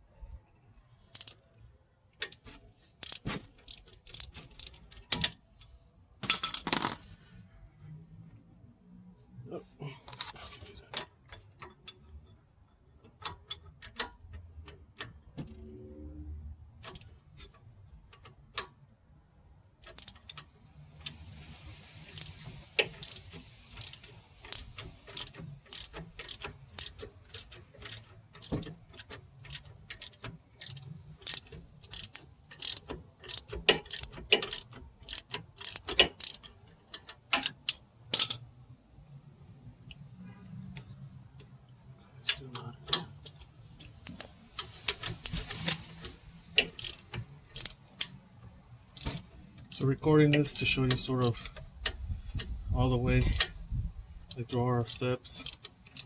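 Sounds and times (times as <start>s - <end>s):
hand ratchet clicking: 1.1s - 1.4s, 2.2s - 5.4s, 13.0s - 15.2s, 16.8s - 18.7s, 19.8s - 21.2s, 22.0s - 38.4s, 42.3s - 48.2s, 48.9s - 52.6s, 54.2s - 56.0s.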